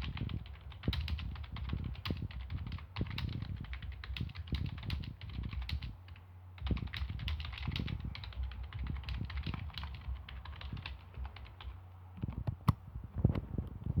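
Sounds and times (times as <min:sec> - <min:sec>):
heavier keyboard thumps: 0:06.6 - 0:12.7.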